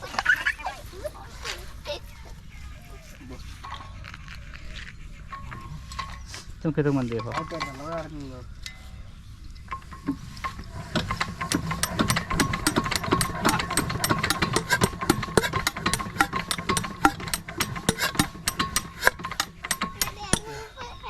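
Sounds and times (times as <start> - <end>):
diesel engine knocking: 10.1 - 20.7.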